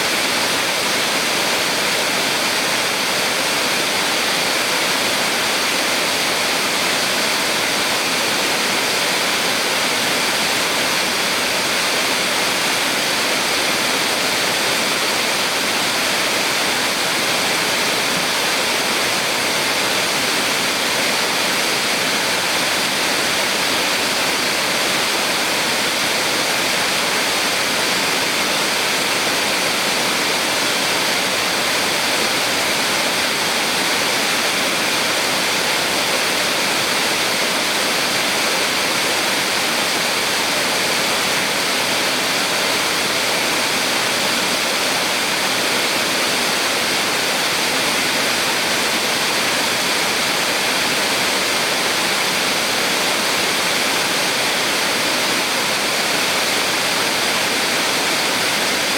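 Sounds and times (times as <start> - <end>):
waterfall roaring: 0.0 - 58.9.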